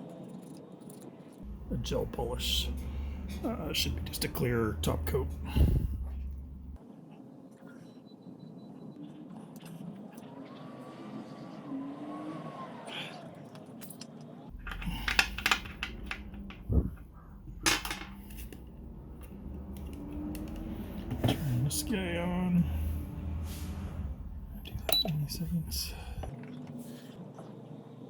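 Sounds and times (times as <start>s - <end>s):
low hum: 1.4s - 6.8s, 14.5s - 28.0s
small objects clicking and knocking: 13.8s - 16.6s.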